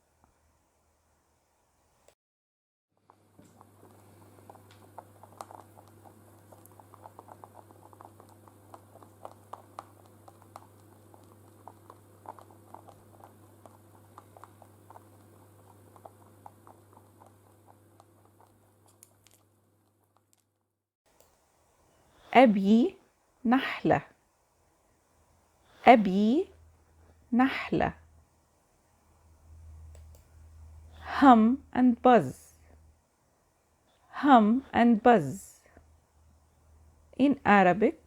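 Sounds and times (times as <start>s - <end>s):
rabbit chewing: 3.4s - 20.2s
low electrical hum: 21.1s - 38.0s.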